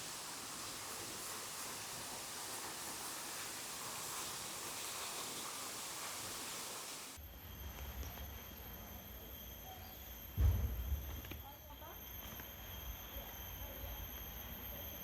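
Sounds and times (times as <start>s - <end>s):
insects high-pitched tones: 7.2s - 15.0s.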